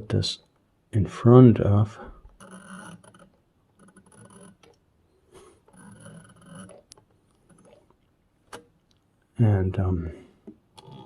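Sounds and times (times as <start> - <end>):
faint rubbing: 2.0 - 8.1
small mechanical clicks: 2.3 - 4.8, 5.6 - 9.0.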